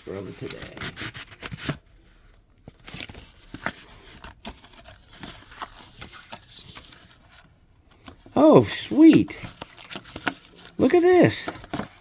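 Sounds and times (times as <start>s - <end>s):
paper envelope tearing: 0.0s - 1.8s, 8.4s - 12.0s
paper rustling and crinkling: 0.0s - 12.0s.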